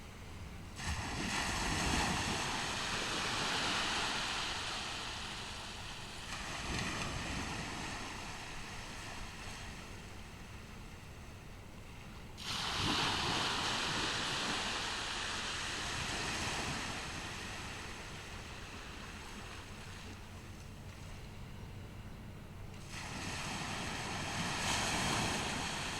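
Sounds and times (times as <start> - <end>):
hiss of surf: 0.0 - 21.2, 22.7 - 25.9
wave breaking on beach: 0.8 - 10.1, 12.4 - 19.7, 22.8 - 25.9.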